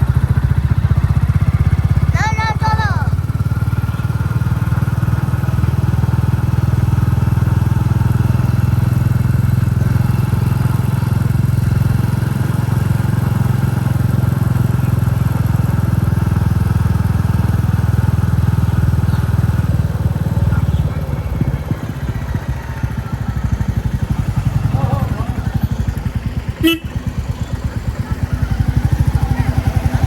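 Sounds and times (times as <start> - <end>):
motorcycle engine thumping: 14.9 - 30.0.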